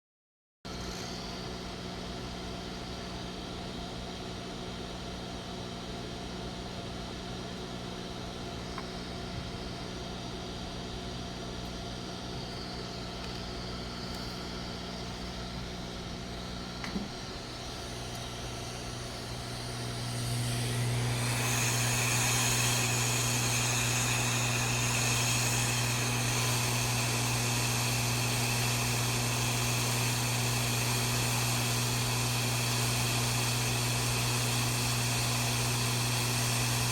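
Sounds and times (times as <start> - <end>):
small motor humming: 11.7 - 36.9
click: 13.2 - 13.5
rushing airflow hiss: 17.3 - 36.9.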